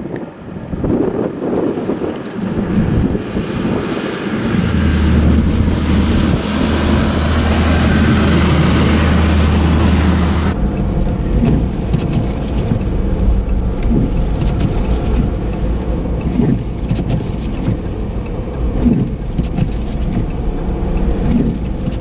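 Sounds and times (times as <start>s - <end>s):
wind and road noise: 0.0s - 22.0s
low steady drone: 2.4s - 22.0s.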